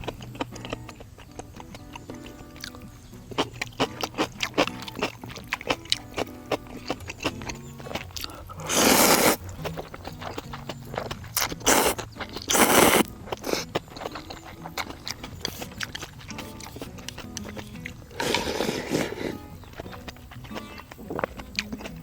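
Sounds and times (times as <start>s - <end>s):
chewing: 0.0s - 22.0s
person slurping noodles: 8.2s - 9.4s, 11.6s - 13.6s, 18.1s - 19.4s.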